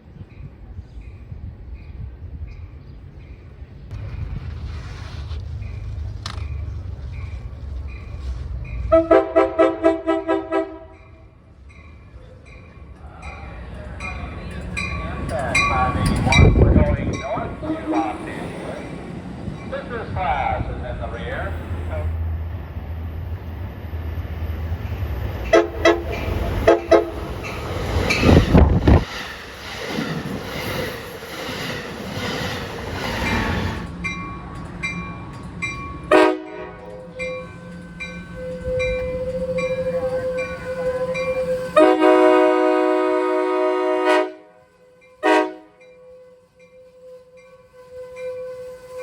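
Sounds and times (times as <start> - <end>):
train rushing past: 0.3 - 45.9
train air horn blasts: 8.9 - 11.3, 25.5 - 27.4, 36.1 - 37.1, 38.3 - 49.0.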